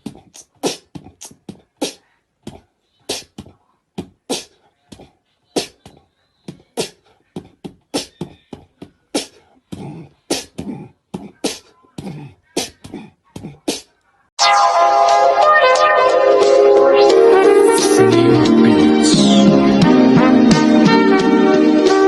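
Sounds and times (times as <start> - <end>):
music: 14.4 - 22.0.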